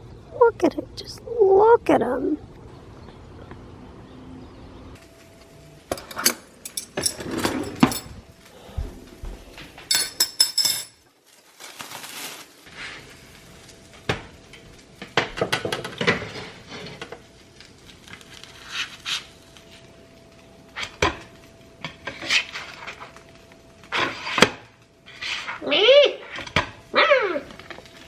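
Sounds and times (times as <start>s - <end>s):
dishes and utensils clinking: 5.9s - 8.2s, 9.8s - 11.0s.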